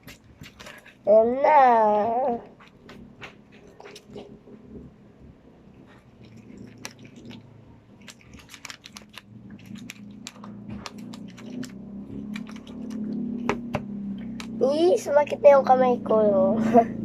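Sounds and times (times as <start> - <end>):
sticky clicks of slime kneaded: 8.1 - 13.0.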